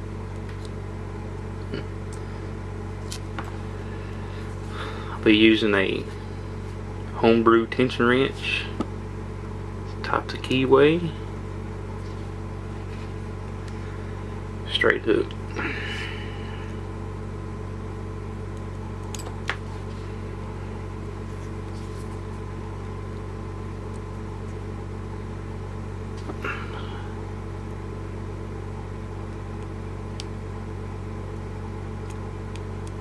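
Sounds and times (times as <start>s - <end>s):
low electrical hum: 0.0s - 33.0s.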